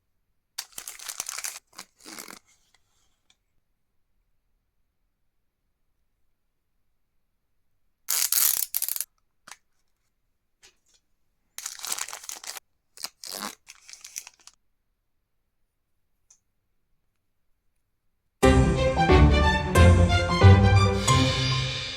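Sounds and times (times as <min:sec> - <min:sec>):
plastic packaging tearing and crinkling: 0:00.6 - 0:02.8, 0:11.6 - 0:14.6.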